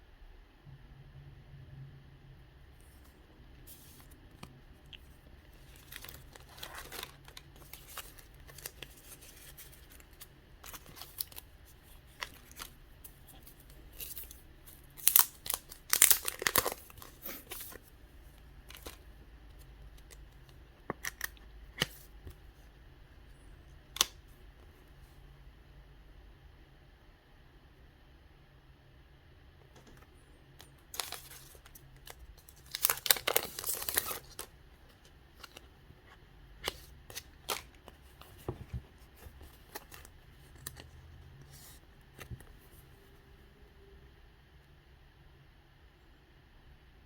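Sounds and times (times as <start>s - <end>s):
packaging crinkling and tearing: 4.9s - 17.9s, 18.7s - 19.0s, 30.8s - 34.5s, 36.6s - 41.0s.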